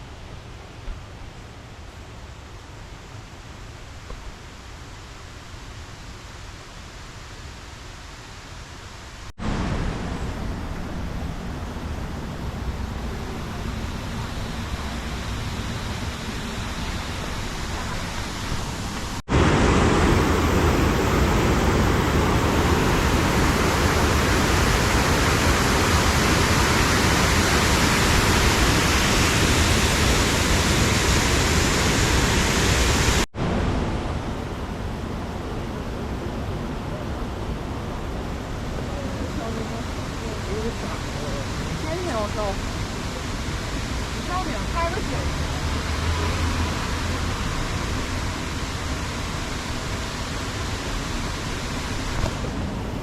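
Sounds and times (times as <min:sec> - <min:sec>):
river water rushing: 0:03.1 - 0:53.0.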